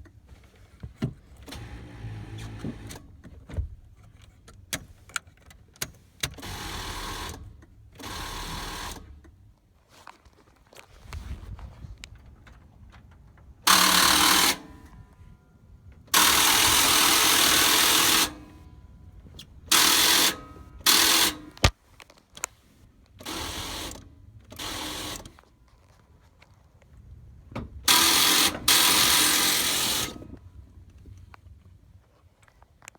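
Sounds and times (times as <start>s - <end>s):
starter motor cranking: 6.4s - 9.2s, 13.6s - 14.9s, 16.1s - 18.6s, 19.7s - 21.7s, 27.9s - 30.3s.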